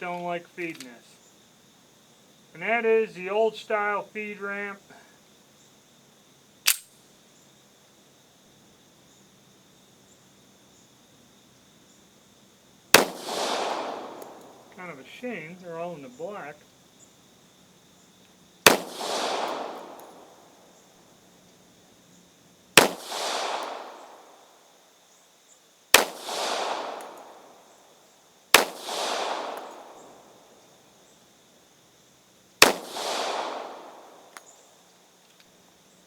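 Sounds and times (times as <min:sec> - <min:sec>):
pistol shots with echo: 0:13.0 - 0:15.0, 0:18.7 - 0:20.6, 0:22.8 - 0:24.4, 0:26.0 - 0:27.6, 0:28.6 - 0:30.4, 0:32.6 - 0:34.4.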